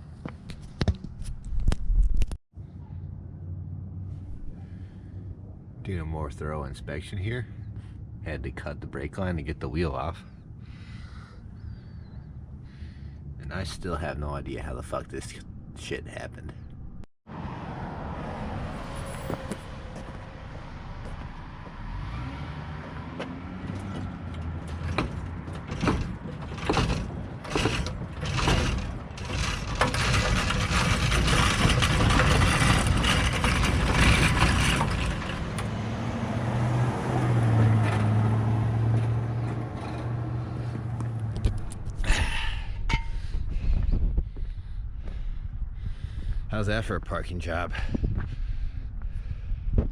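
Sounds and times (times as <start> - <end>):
truck engine running under load: 23.4 - 41.6
metal clanks and knocks: 23.7 - 35.8, 42.9 - 43.4
low hum: 38.1 - 46.8.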